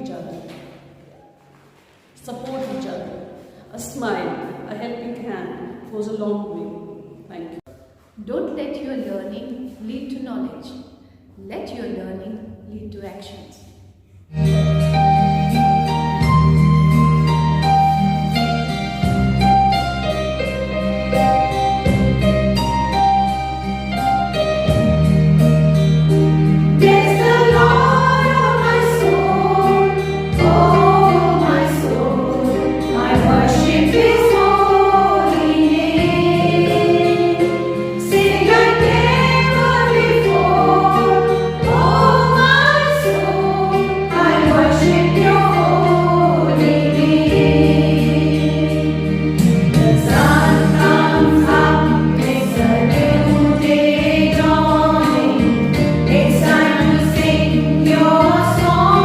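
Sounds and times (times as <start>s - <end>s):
instrumental accompaniment: 14.1s - 59.0s
held low notes: 24.1s - 59.0s
group singing in chorus: 26.8s - 59.0s.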